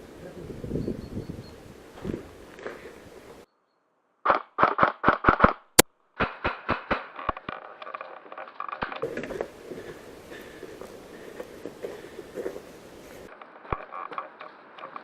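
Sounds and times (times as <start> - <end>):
airsoft gun shots: 4.2 - 7.2.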